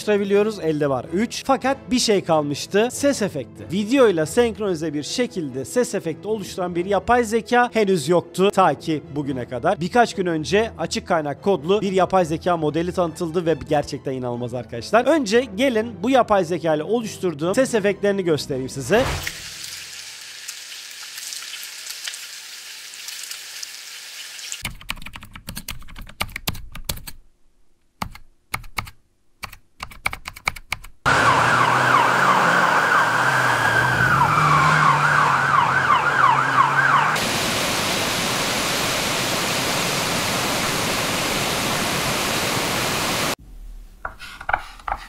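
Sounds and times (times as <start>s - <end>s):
wavering siren-like wail: 31.1s - 37.2s
steady hiss: 37.2s - 44.0s.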